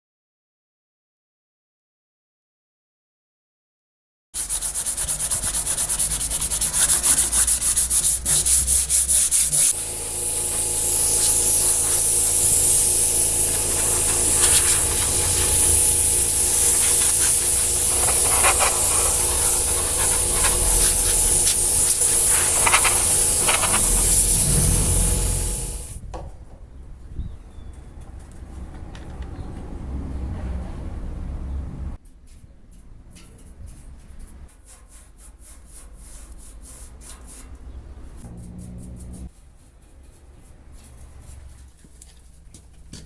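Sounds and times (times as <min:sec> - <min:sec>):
hand sanding strokes: 0:04.4 - 0:26.0, 0:34.6 - 0:37.7
power sander hissing: 0:04.4 - 0:26.0.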